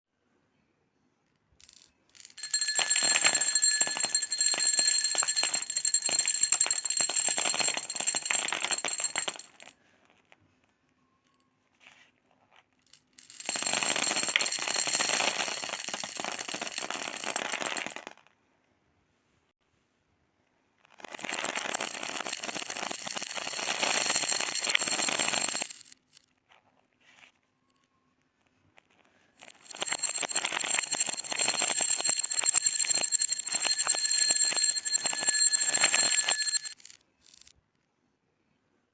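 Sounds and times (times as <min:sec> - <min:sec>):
small beads clattering: 0:01.6 - 0:09.7, 0:12.8 - 0:18.2, 0:21.0 - 0:26.2, 0:29.4 - 0:37.5
steady high ringing: 0:02.4 - 0:09.6, 0:29.5 - 0:36.8.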